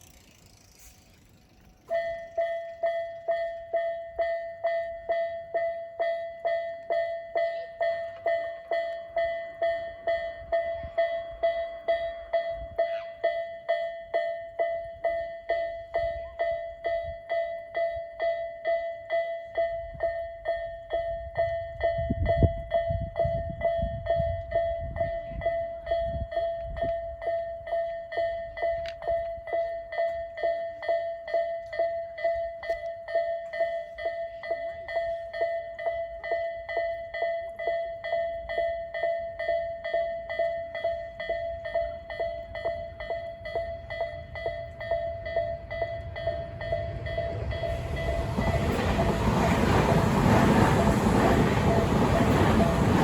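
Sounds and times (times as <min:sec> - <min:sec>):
train rumbling past: 0:00.0 - 0:05.7, 0:41.2 - 0:53.0.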